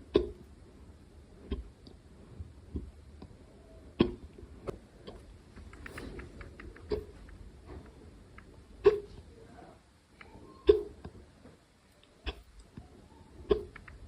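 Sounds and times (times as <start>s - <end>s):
person hiccuping: 8.8s - 9.2s
clicking mouth sounds: 12.0s - 12.8s.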